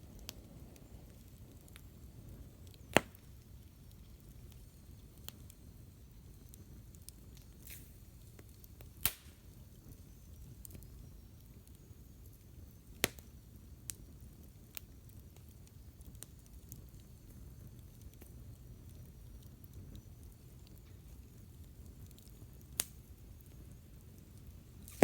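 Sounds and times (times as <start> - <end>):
loud fire pops: 0.0 - 5.7, 6.3 - 11.2, 24.0 - 25.0
campfire crackling: 0.0 - 25.0.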